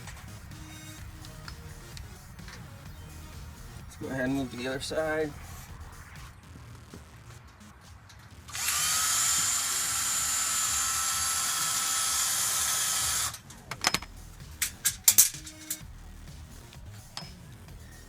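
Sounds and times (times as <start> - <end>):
cordless drill running: 8.5 - 13.4
sharp clicks and knocks: 13.5 - 15.8.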